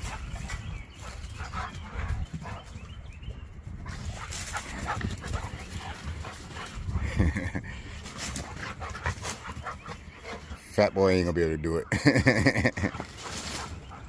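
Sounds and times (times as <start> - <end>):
dogs scuffling and thumping: 3.8 - 10.6, 12.8 - 14.0.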